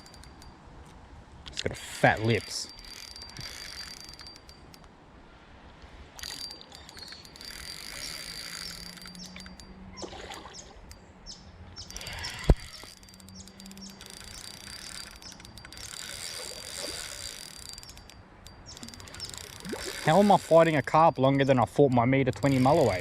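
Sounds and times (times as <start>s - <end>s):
fishing reel ticking: 0.0s - 0.6s, 1.5s - 5.0s, 6.1s - 11.1s, 11.7s - 23.0s
small birds chirping: 6.7s - 16.8s, 17.6s - 20.2s.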